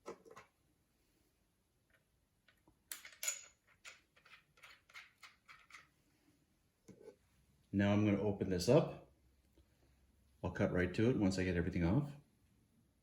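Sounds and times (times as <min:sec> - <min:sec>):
metal parts clicking and tapping: 0:02.5 - 0:05.9.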